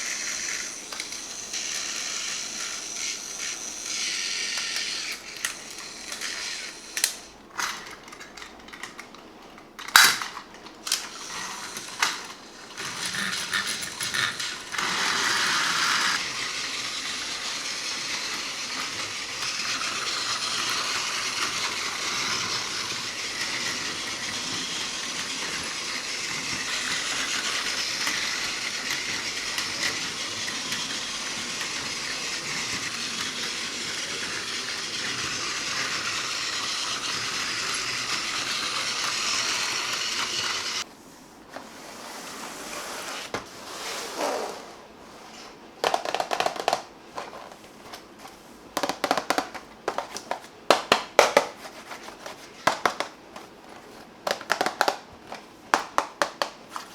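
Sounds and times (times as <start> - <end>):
toy train whirring on track: 0.0 - 9.2, 9.8 - 40.9
plastic toy parts clicking: 4.5 - 15.2, 45.8 - 47.3, 48.8 - 51.6, 54.3 - 56.6.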